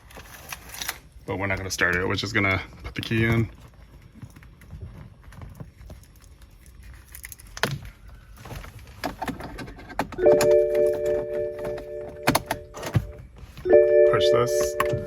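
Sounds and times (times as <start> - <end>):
car electrics humming: 10.1 - 15.0.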